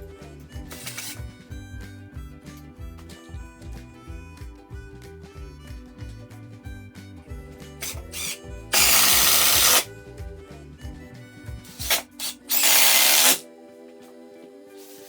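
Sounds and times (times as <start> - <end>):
background music: 0.0 - 15.0
power drill running: 0.7 - 1.2, 7.8 - 9.9, 11.7 - 13.4.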